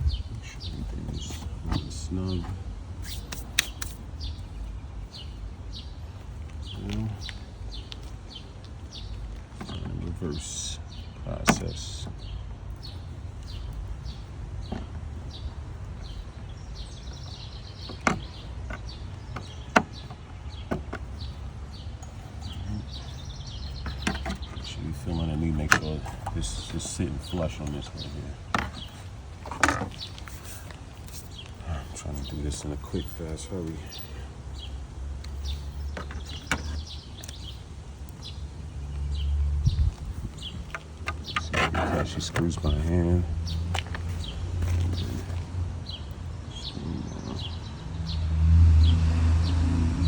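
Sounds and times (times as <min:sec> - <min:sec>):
steady low rumble: 0:00.0 - 0:17.2, 0:37.5 - 0:41.4
birds chirping faintly: 0:00.0 - 0:50.0.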